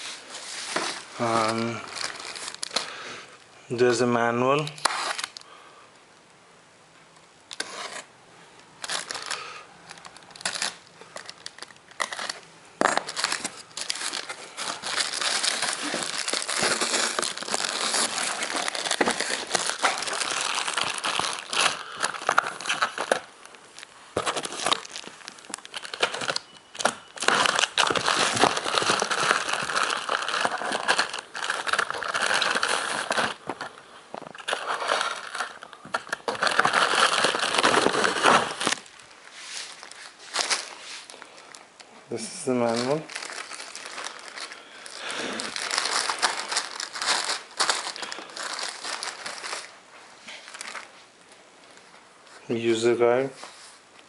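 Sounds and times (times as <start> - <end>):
packaging crinkling: 0.0 - 3.0, 4.6 - 5.5, 8.8 - 50.9
packaging tearing: 1.2 - 2.9, 4.7 - 5.4, 8.8 - 33.7, 34.3 - 39.0, 42.4 - 49.7.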